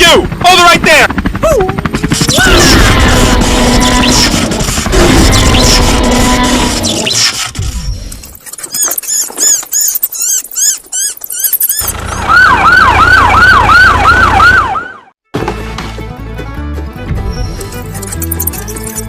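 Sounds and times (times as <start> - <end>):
electronic siren wail: 2.3 - 8.0, 11.4 - 15.1
high arching chirps: 6.8 - 12.2, 17.3 - 19.0
music: 15.2 - 19.0.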